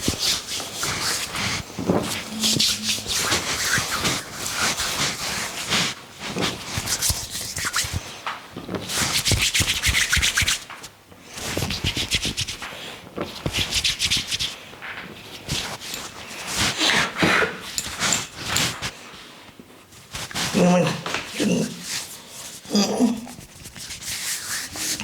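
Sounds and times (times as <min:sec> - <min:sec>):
hands rubbing oiled hair: 0:00.0 - 0:08.1, 0:08.9 - 0:10.8, 0:23.3 - 0:25.0.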